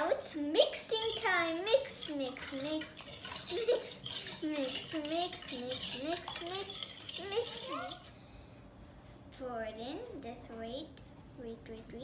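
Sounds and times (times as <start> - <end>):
utensil scraping mixing bowl: 0.8 - 8.2.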